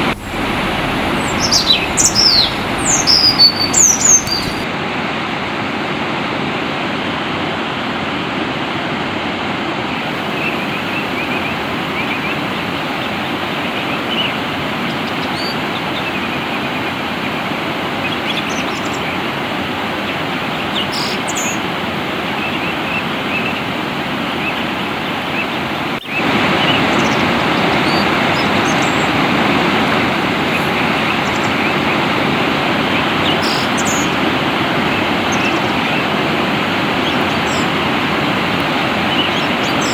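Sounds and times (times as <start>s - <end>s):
songbirds chirping: 0.0s - 4.6s
flowing water rushing: 0.0s - 4.7s, 26.2s - 39.9s.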